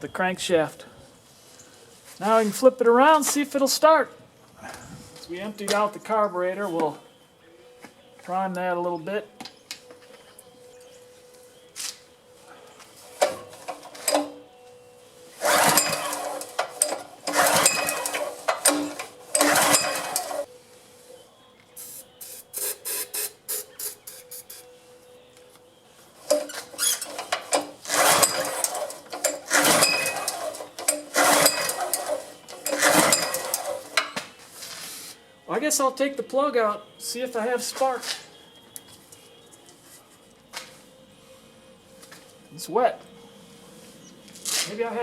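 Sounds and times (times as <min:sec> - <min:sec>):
recoil starter pulls: 0:13.2 - 0:14.4, 0:15.4 - 0:20.5, 0:26.3 - 0:34.2.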